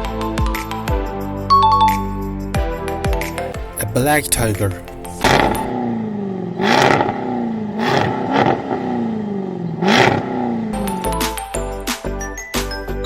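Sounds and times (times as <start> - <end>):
car engine revving: 3.5 - 5.9, 6.5 - 10.6.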